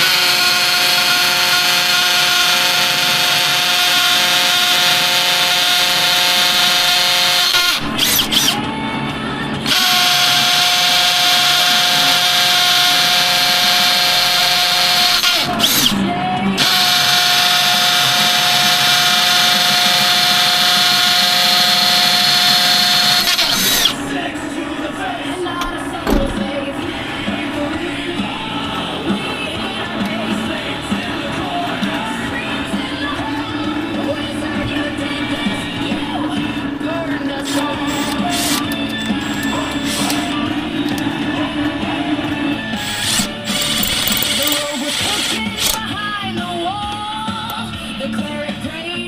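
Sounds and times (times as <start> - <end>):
power drill running: 0.0 - 8.7, 9.6 - 24.2, 37.3 - 41.1, 42.6 - 46.1.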